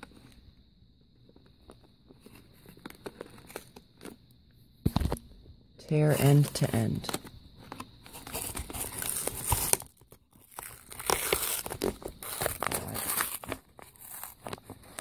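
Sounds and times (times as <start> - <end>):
plastic crinkling: 7.7 - 15.0
plastic packaging tearing: 8.1 - 15.0.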